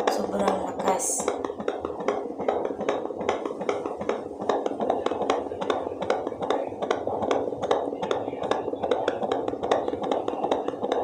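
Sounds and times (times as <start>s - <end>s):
fast whooshing heartbeat: 1.2s - 11.0s.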